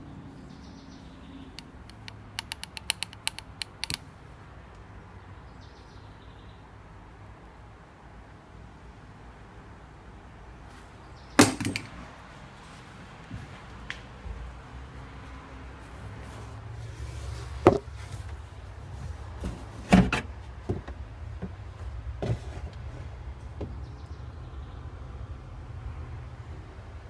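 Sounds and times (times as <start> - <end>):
sharp clicks and knocks: 1.6 - 4.0, 11.4 - 12.0
engine humming: 11.0 - 27.0.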